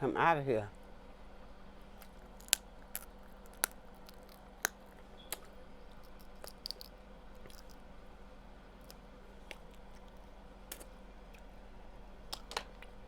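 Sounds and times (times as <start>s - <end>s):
crab shells cracking: 1.9s - 7.9s.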